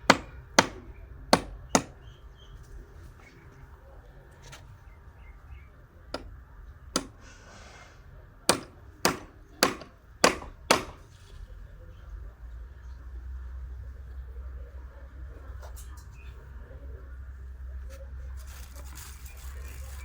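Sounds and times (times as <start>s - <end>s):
hand tool striking hard material: 0.0s - 2.0s, 6.9s - 7.2s, 8.5s - 11.1s
brief scraping hiss: 7.2s - 8.1s.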